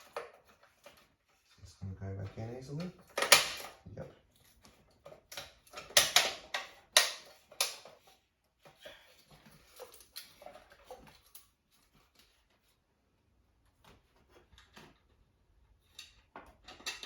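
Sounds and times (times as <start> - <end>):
hard objects clicking and knocking: 0.0 - 1.2, 2.2 - 11.5, 15.9 - 17.0.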